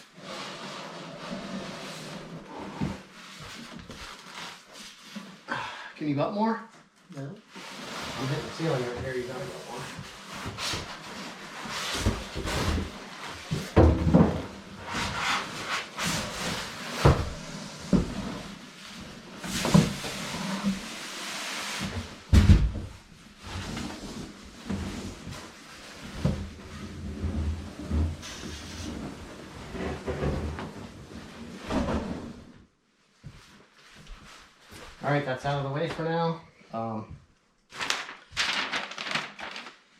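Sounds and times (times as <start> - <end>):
cardboard scraping and rustling: 7.6 - 22.6.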